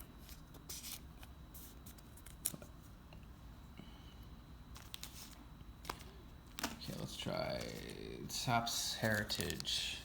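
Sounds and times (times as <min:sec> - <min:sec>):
cards and wrappers rustling: 0:04.7 - 0:08.2, 0:08.8 - 0:10.0.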